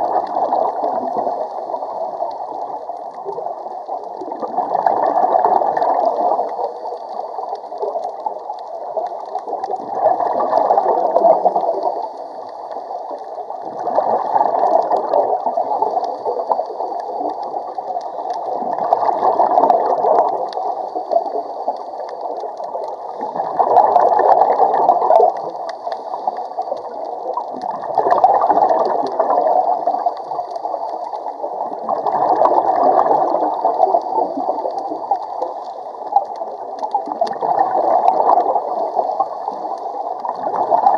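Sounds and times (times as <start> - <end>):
diver exhaling bubbles: 4.2 - 6.6, 18.5 - 21.4, 23.2 - 25.5, 27.5 - 30.1, 31.6 - 35.2.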